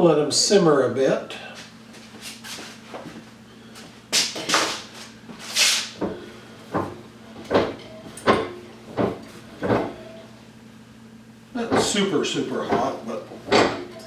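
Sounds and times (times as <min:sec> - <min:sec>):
steady low hum: 0:00.0 - 0:14.0
objects knocking and clattering: 0:06.0 - 0:10.0, 0:12.7 - 0:14.0.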